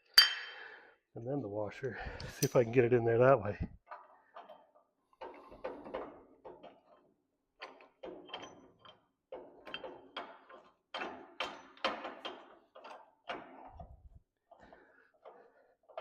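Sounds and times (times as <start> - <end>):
metal parts knocking and clinking: 3.8 - 14.0.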